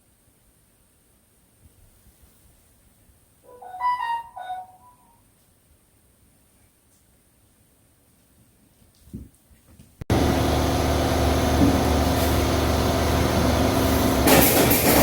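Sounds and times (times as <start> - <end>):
machine drone with low hum: 10.1 - 15.0.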